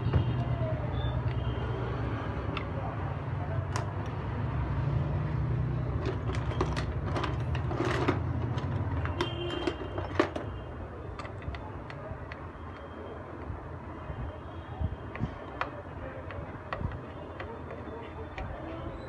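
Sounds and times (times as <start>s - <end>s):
screwdriver and parts clicking: 11.1s - 12.9s.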